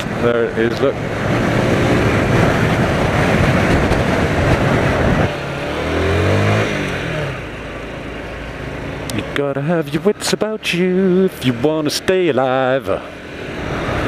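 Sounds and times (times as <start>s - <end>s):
vehicle and road noise: 0.0s - 14.0s
engine rising and falling: 0.6s - 7.8s.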